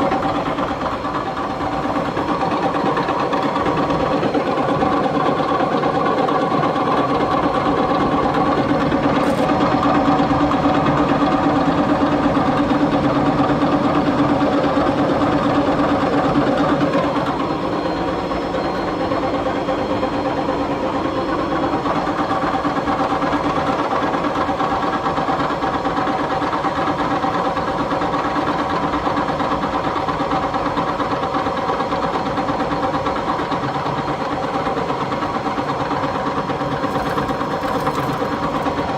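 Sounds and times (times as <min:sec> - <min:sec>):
motor running with bad bearings: 0:36.7 - 0:38.9.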